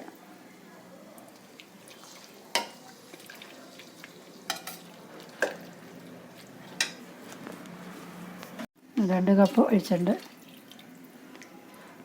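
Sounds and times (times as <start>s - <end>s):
water pouring into pot: 1.1s - 6.2s, 10.1s - 11.2s.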